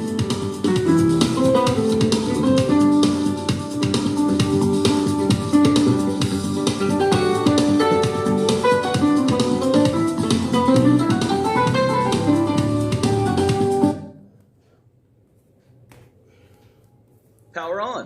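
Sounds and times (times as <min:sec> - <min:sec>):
drum kit: 0:00.0 - 0:14.1
plucked guitar: 0:00.7 - 0:14.0.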